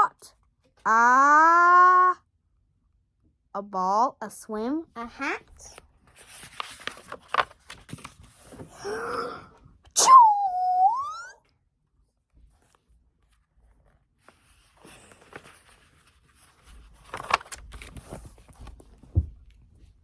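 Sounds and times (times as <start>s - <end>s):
book rustling and knocking: 5.6s - 8.8s, 12.3s - 20.0s.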